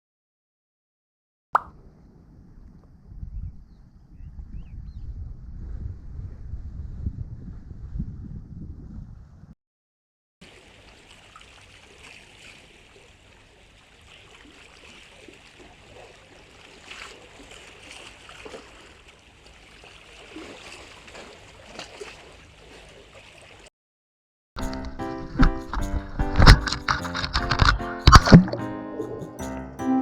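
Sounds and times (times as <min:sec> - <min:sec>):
muffled underwater water noise: 0:10.4 - 0:23.7, 0:25.4 - 0:28.6
small clicks and crackles: 0:25.7 - 0:28.4.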